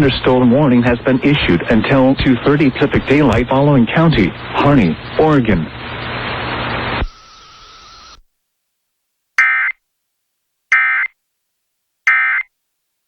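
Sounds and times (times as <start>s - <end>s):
buzzing digital data bursts: 4.0s - 8.2s.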